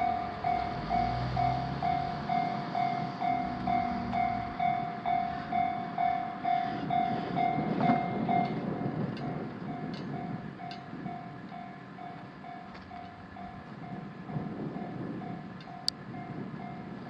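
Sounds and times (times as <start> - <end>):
level-crossing bell ringing: 0.0 - 8.8
train passing with wheel clicks: 0.0 - 17.0.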